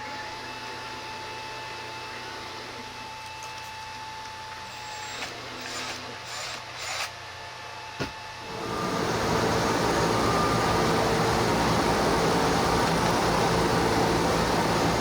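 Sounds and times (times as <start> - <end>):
faint machine hum: 8.2 - 15.0
shop machine rushing noise: 8.5 - 15.0.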